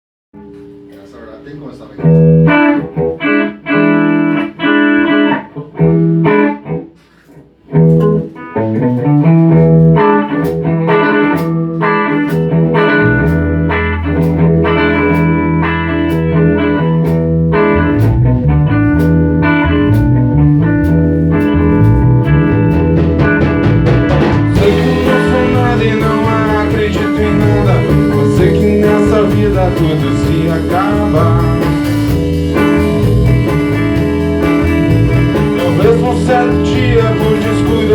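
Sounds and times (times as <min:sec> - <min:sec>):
bass guitar: 0:00.4 - 0:37.9
strummed guitar chords: 0:00.4 - 0:37.9
cymbals: 0:24.4 - 0:37.9.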